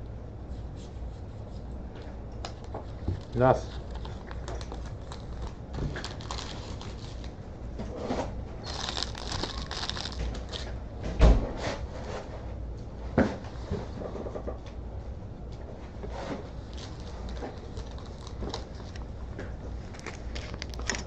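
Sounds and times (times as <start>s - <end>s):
wrappers crinkling: 3.2s - 7.4s, 8.6s - 10.7s, 16.6s - 19.1s, 19.7s - 21.0s.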